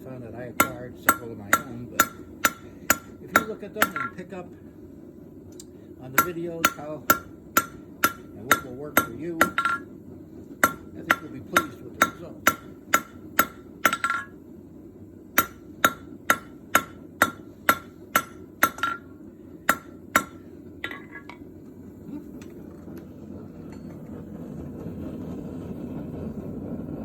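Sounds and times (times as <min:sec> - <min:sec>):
hammer striking metal on anvil: 0:00.6 - 0:04.2, 0:06.2 - 0:09.9, 0:10.6 - 0:14.4, 0:15.4 - 0:21.4.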